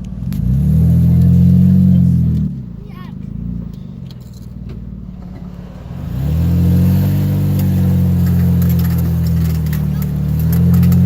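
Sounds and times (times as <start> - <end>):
vehicle engine droning: 0.0 - 11.0
clicks and rattles: 7.1 - 11.0.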